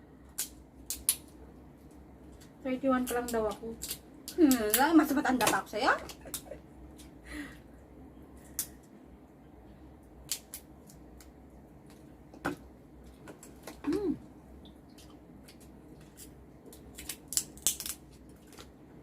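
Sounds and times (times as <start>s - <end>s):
person humming hm: 13.8s - 14.2s.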